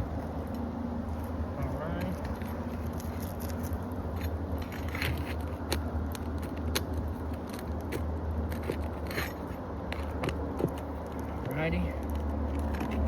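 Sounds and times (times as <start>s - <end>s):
metal tool clicking and scraping: 2.0s - 10.9s.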